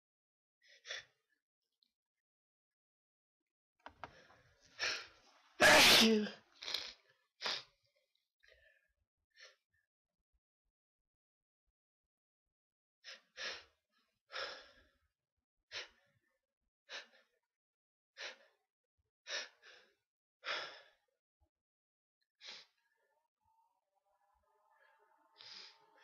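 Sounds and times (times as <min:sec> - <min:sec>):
person sneezing: 0:05.6 - 0:06.4.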